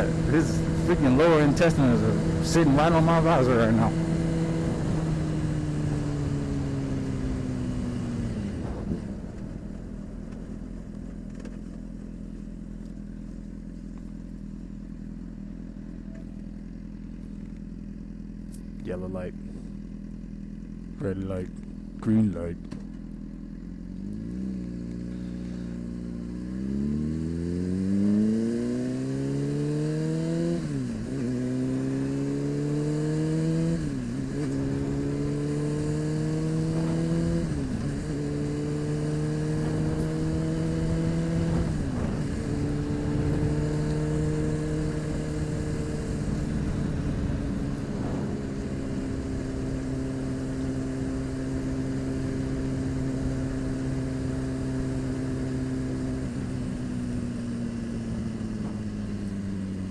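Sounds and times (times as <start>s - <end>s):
motorcycle engine accelerating: 0.0s - 59.9s
wind rushing: 45.2s - 49.1s.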